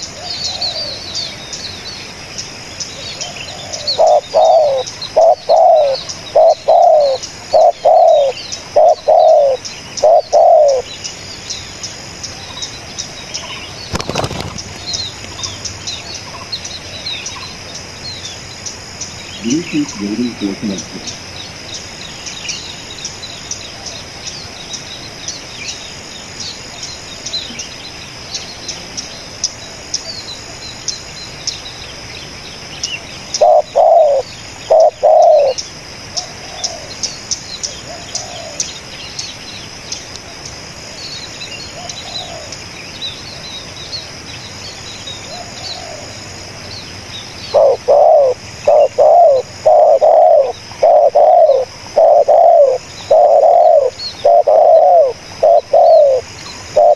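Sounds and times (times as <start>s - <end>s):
small birds chirping: 0.0s - 56.9s
dove cooing: 3.2s - 10.9s, 19.4s - 21.3s, 33.4s - 35.6s, 37.9s - 38.6s, 47.5s - 56.9s.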